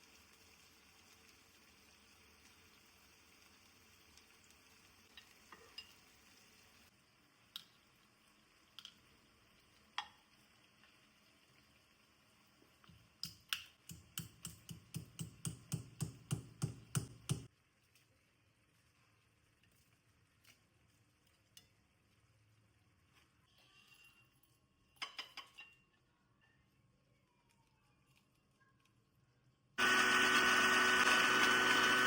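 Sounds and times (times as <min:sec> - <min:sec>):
clinks and taps: 0:24.9 - 0:25.8.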